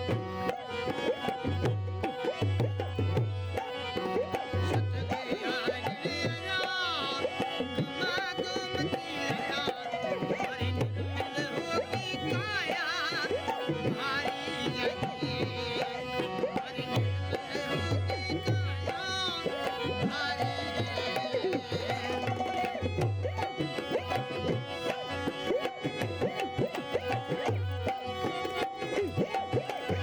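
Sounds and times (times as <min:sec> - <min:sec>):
hand drum rhythm: 0:07.4 - 0:30.0.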